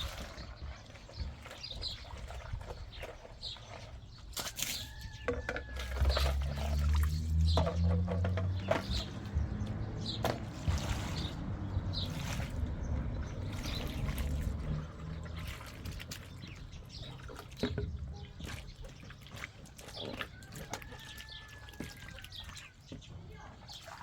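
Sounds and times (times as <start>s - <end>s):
water trickling and dripping: 0.0s - 24.0s.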